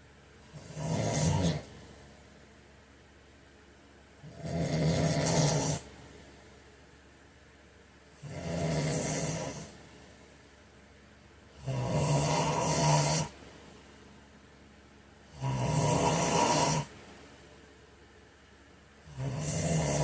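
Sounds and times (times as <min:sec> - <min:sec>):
man snoring: 0:00.4 - 0:01.8, 0:04.2 - 0:05.9, 0:08.2 - 0:09.8, 0:11.6 - 0:13.4, 0:15.3 - 0:16.9, 0:19.0 - 0:20.0.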